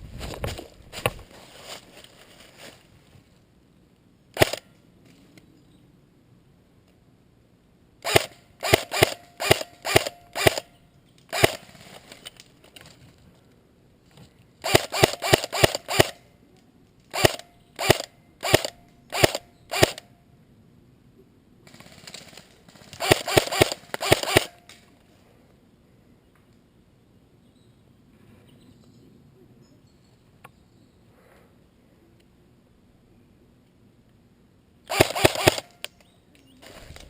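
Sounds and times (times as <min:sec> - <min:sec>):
airsoft rifle firing shots: 0:04.4 - 0:04.7, 0:08.0 - 0:10.7, 0:11.3 - 0:11.7, 0:14.6 - 0:16.2, 0:17.1 - 0:20.1, 0:23.0 - 0:24.7, 0:34.9 - 0:35.8.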